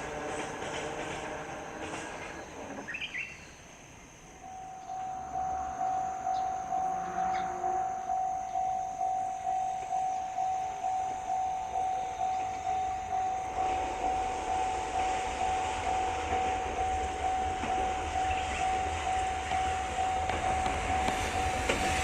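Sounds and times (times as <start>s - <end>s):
train rumbling on rails: 0.0s - 22.0s
level-crossing warning bell: 4.4s - 22.0s.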